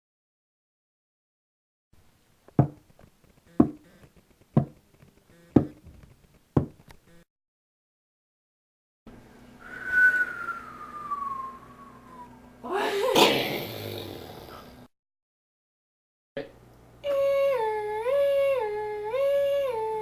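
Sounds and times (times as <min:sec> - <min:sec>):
sharp knocks: 0:02.6 - 0:03.0, 0:03.6 - 0:03.9, 0:04.6 - 0:04.8, 0:05.5 - 0:06.0, 0:06.6 - 0:06.8
whistle sliding down in pitch: 0:09.6 - 0:12.4.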